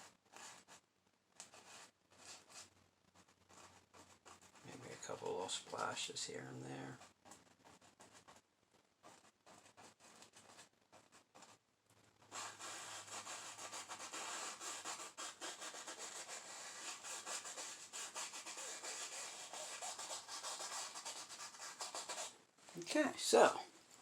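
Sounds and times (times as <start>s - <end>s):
paint scrubbed onto canvas: 3.6s - 7.0s, 12.3s - 24.0s.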